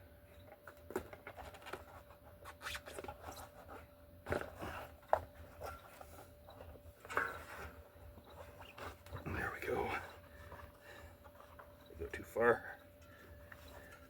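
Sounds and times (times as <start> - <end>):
tire rubbing and scraping on rim: 1.2 - 11.8.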